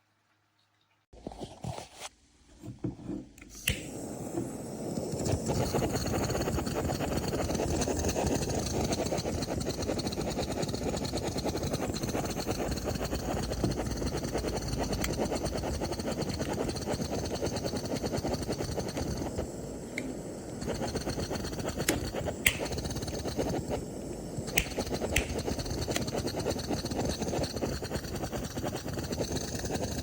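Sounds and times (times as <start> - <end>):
torch flame roaring: 3.7 - 30.0
sharp clicks: 24.5 - 26.2.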